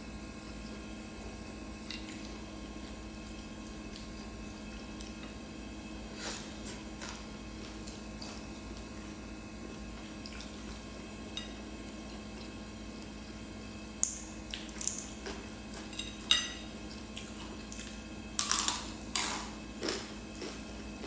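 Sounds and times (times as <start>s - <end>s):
chewing and wet mouth noises: 10.2s - 10.8s, 16.9s - 21.0s.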